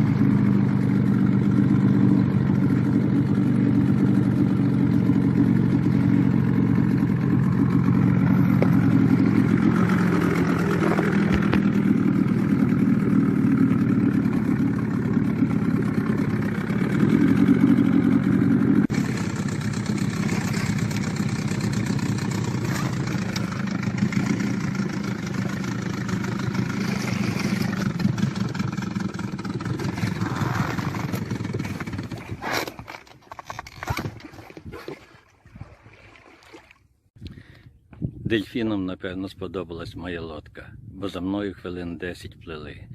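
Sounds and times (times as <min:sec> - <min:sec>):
boat motor running: 0:00.0 - 0:36.5
water noise: 0:01.6 - 0:37.1.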